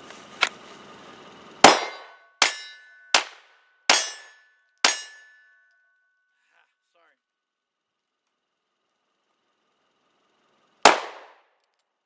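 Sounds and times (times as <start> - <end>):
pistol shots: 1.6 - 2.1, 10.9 - 11.4
metallic ringing tone: 1.7 - 3.2, 3.9 - 6.4.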